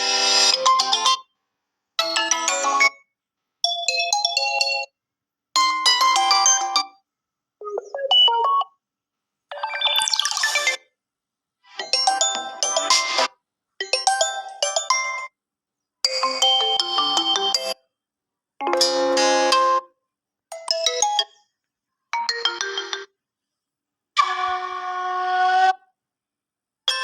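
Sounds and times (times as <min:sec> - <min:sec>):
phone ringtone chiming melody: 0:18.6 - 0:19.8.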